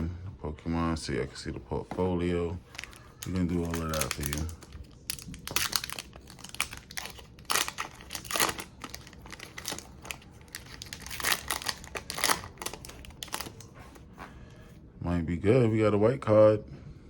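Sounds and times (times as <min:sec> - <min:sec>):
foil wrapper crinkling: 0:02.6 - 0:13.7
foil wrapper ripping: 0:02.7 - 0:13.7.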